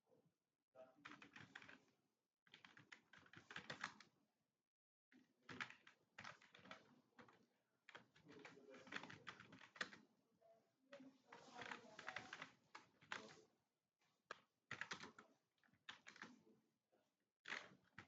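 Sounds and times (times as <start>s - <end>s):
computer keyboard typing: 1.0s - 1.9s, 2.5s - 4.1s, 5.5s - 10.0s, 11.4s - 13.4s, 14.3s - 16.4s, 17.4s - 18.0s.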